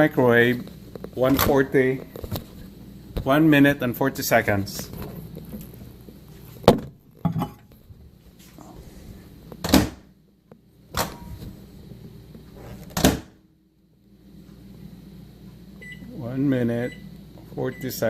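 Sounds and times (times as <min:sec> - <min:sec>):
microwave door shutting: 0:09.6 - 0:10.1, 0:10.9 - 0:11.5, 0:12.9 - 0:13.4.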